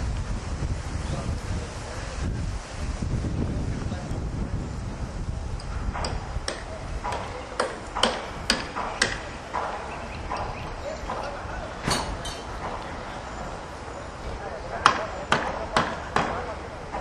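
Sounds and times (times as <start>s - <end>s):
wind rumble: 0.0s - 14.8s
sharp knocks: 5.9s - 12.8s, 14.8s - 17.0s.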